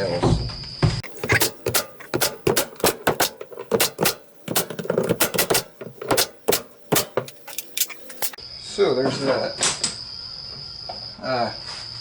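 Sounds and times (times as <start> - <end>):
hammer driving nails into wood: 1.0 - 8.4.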